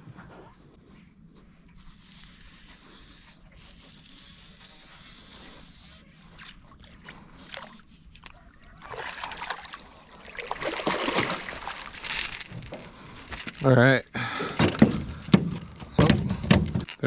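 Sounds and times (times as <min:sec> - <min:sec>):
water splashing and sloshing: 0:06.1 - 0:13.7.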